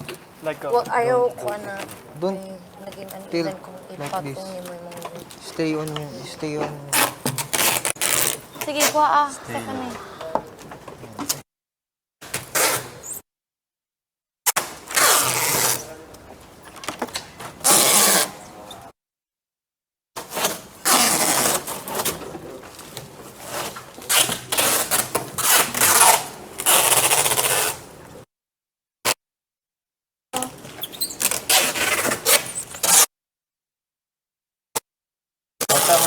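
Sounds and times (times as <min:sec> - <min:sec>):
packing tape ripping off roll: 0:06.9 - 0:08.8, 0:12.3 - 0:13.0, 0:14.5 - 0:15.9, 0:17.6 - 0:18.3, 0:20.3 - 0:22.2, 0:23.0 - 0:27.9, 0:31.2 - 0:33.1, 0:35.6 - 0:36.0.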